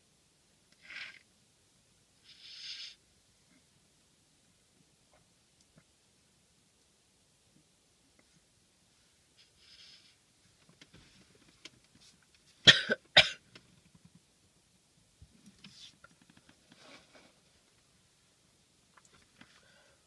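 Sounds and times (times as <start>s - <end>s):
faint breaths: 19.3s - 20.0s.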